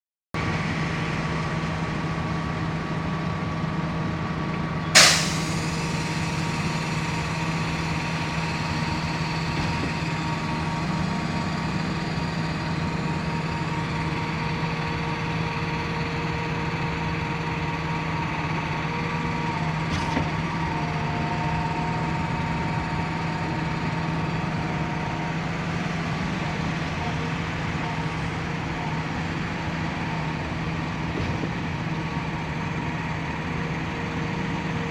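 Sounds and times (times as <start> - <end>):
concrete pump engine hum: 0.4 - 34.9
sharp bang: 5.0 - 6.2.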